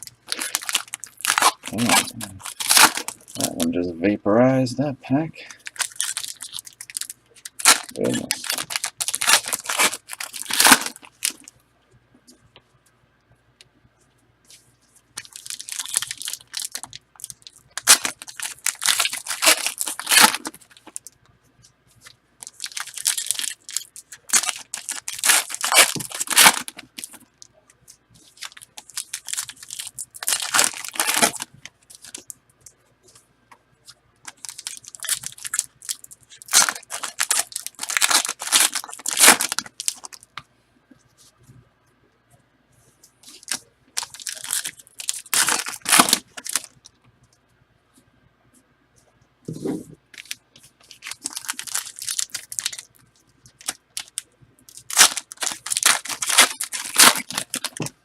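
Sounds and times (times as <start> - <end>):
foil wrappers tearing and crinkling: 0.0 - 3.7, 5.5 - 11.5, 15.2 - 21.0, 22.4 - 27.3, 28.3 - 32.3, 34.3 - 40.2, 43.3 - 46.8, 50.1 - 52.9, 53.5 - 57.9.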